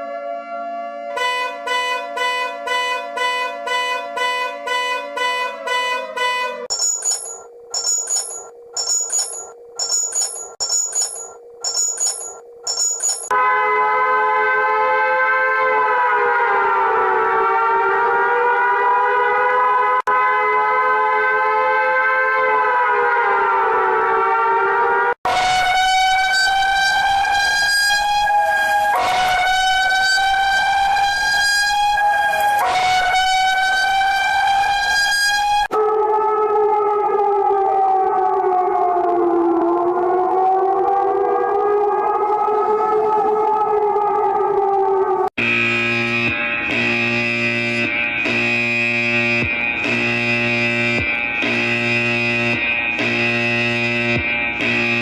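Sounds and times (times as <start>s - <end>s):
steady alarm tone: 1.2s - 13.6s, 25.2s - 35.8s, 45.4s - 55.0s
high electronic alarm pulse: 6.7s - 13.4s, 25.3s - 35.7s, 45.4s - 55.0s.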